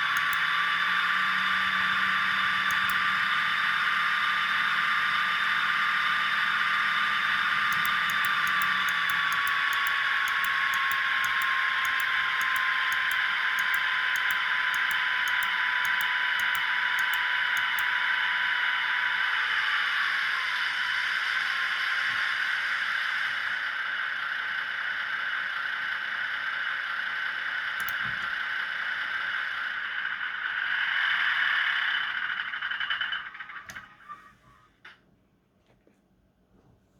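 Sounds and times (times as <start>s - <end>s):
faint clicks: 0.0s - 0.9s, 7.6s - 17.9s, 27.8s - 28.0s.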